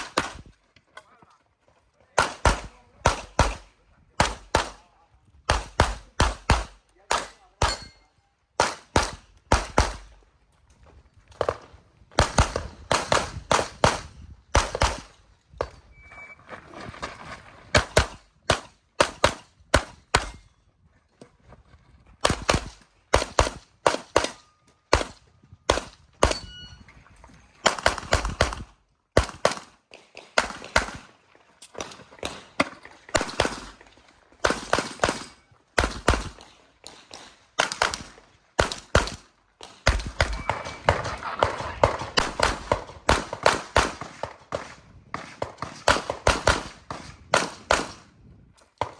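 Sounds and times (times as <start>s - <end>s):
pistol shots: 2.2s - 4.9s, 5.5s - 8.0s, 8.6s - 10.1s, 17.8s - 20.4s, 22.2s - 26.5s, 27.6s - 31.1s, 31.8s - 48.1s.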